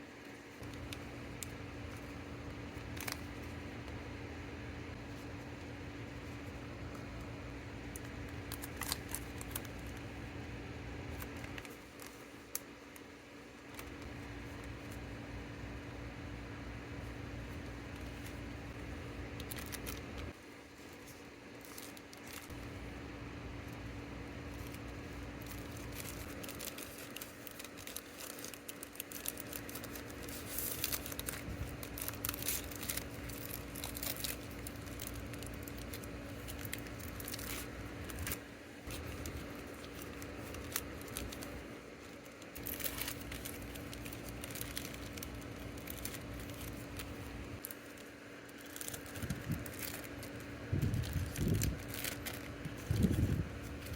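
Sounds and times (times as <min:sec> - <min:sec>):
steady low hum: 0:00.0 - 0:53.9
packaging crinkling and rustling: 0:00.2 - 0:03.9, 0:07.9 - 0:10.3, 0:17.0 - 0:22.9, 0:23.6 - 0:53.9.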